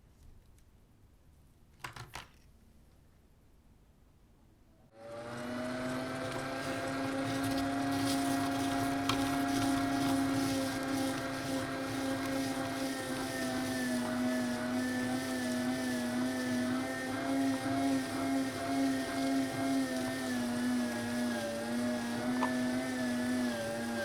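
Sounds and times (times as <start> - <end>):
meat grinder motor humming: 5.0 - 24.0.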